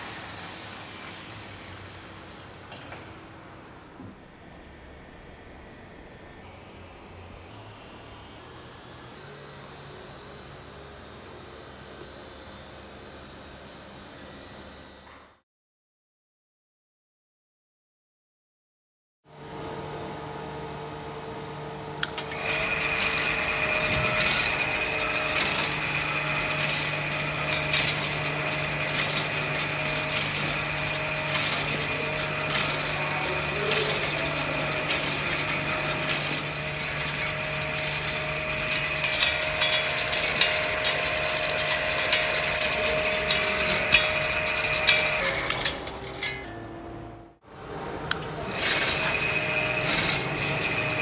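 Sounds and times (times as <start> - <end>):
machine motor humming: 19.4 - 46.3, 48.0 - 51.0
high machining whine: 22.0 - 46.2
tool scraping metal: 22.0 - 46.6, 48.1 - 51.0.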